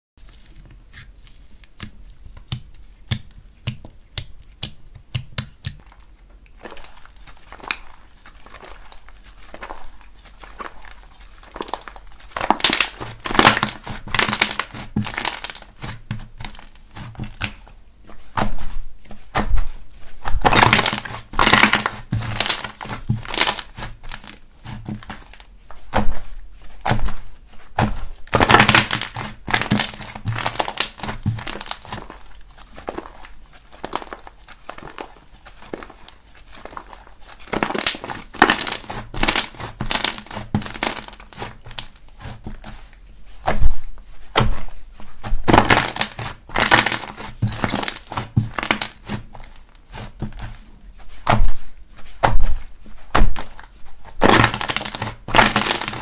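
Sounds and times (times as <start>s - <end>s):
slime crackling and crunching: 0.2s - 27.2s, 27.8s - 42.8s, 44.3s - 51.6s, 52.2s - 56.0s.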